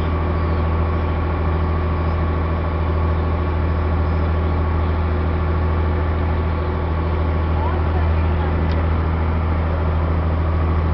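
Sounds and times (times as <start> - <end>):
boat engine droning: 0.0 - 10.9.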